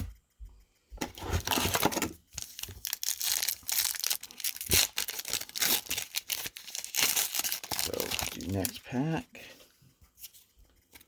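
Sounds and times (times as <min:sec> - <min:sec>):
plastic wrapper crinkling and tearing: 0:01.4 - 0:08.9.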